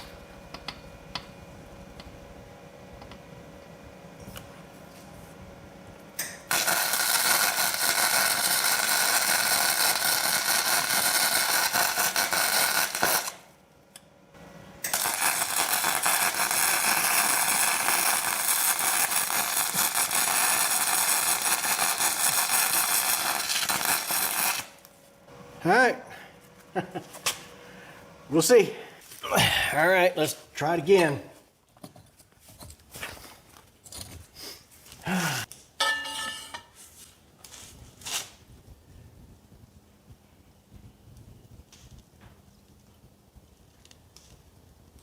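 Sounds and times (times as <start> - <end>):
electric arc welding crackle: 6.2 - 13.5, 14.8 - 24.9.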